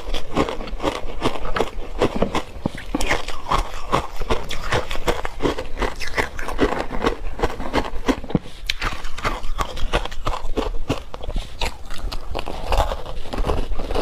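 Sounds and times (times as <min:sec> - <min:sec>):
ice being chewed crunching: 0:00.0 - 0:14.0.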